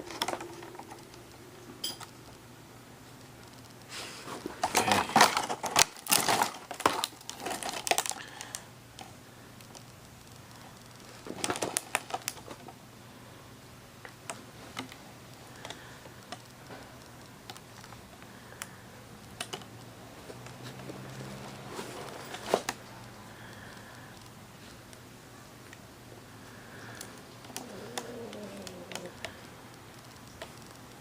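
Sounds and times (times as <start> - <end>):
clicks and taps handling packaging: 4.6 - 10.5, 11.2 - 12.7, 15.6 - 25.0.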